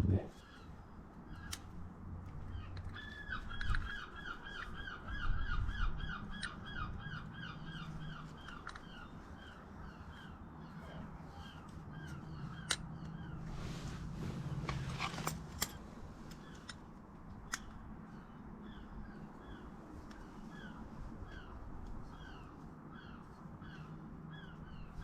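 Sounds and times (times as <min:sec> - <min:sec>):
small metal parts clicking: 0:02.7 - 0:03.9, 0:08.4 - 0:08.9.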